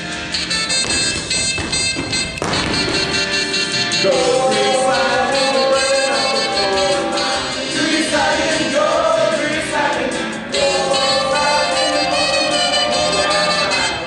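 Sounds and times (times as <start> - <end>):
band backing: 0.0 - 14.0
voices singing held notes: 3.8 - 14.0.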